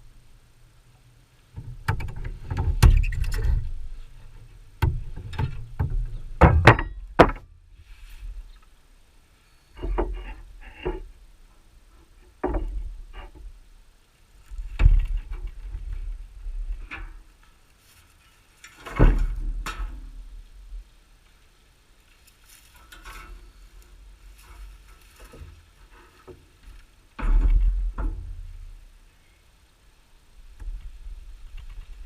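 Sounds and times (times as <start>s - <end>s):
wooden beehive parts knocking: 4.8s - 7.5s.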